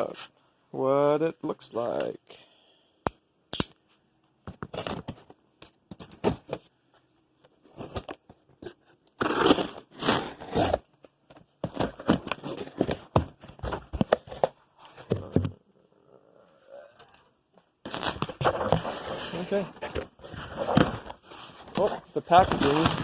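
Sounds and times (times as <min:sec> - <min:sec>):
cardboard box being torn open: 0:09.2 - 0:10.9, 0:17.9 - 0:23.0
packing material crinkling: 0:17.9 - 0:23.0.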